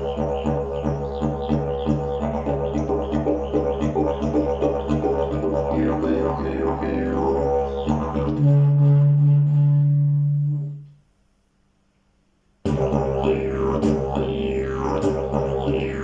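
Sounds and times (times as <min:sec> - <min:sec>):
didgeridoo drone: 0:00.0 - 0:10.8, 0:12.7 - 0:16.0.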